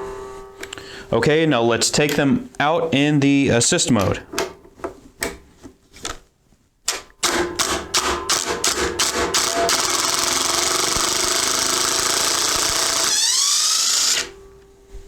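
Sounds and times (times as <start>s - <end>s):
impact driver hammering: 6.9s - 14.4s.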